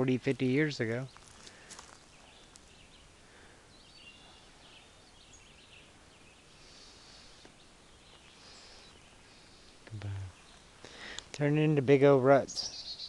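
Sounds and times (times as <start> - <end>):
distant bird chirps: 0.0 - 13.0
faint background hiss: 0.0 - 13.0.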